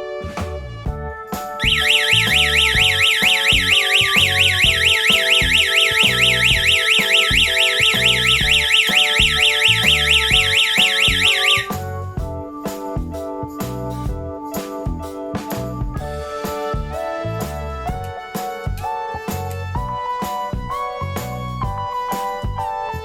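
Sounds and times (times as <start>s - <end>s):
background music: 0.0s - 23.0s
warbling security alarm siren: 1.6s - 11.8s.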